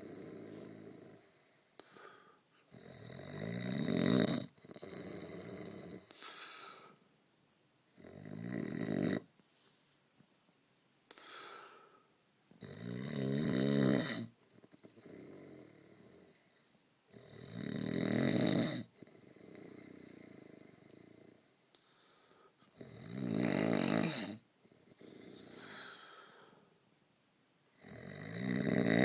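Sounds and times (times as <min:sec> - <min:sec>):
soft breaths: 0:00.0 - 0:02.8, 0:05.0 - 0:07.7, 0:09.3 - 0:12.6, 0:18.9 - 0:22.8, 0:24.6 - 0:26.9
loud snores: 0:00.0 - 0:06.5, 0:08.0 - 0:09.3, 0:12.6 - 0:16.4, 0:17.1 - 0:21.4, 0:22.8 - 0:26.3, 0:27.8 - 0:29.0.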